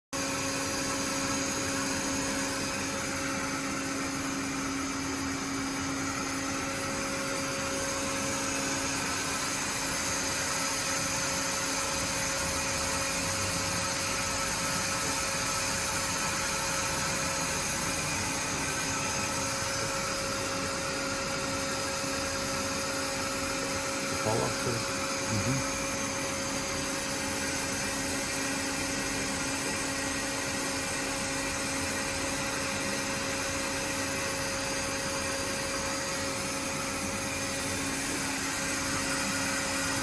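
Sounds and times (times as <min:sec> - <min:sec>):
machining centre whirring: 0:24.0 - 0:26.0.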